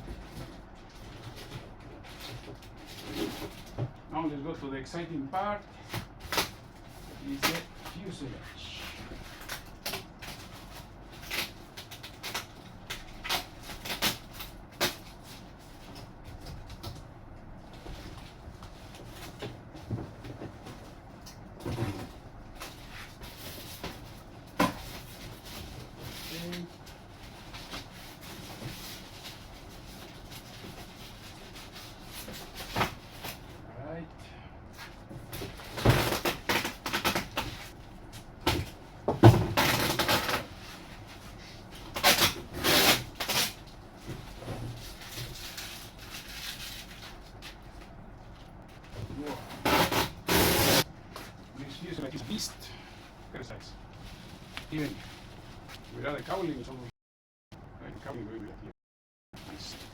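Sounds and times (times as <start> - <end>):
packaging rustling and scraping: 0.0 - 3.8, 5.9 - 16.9, 17.6 - 33.6, 34.7 - 52.4, 53.1 - 56.4
packaging rubbing and scraping: 35.5 - 37.8, 39.5 - 43.7, 44.3 - 47.7, 48.4 - 50.9.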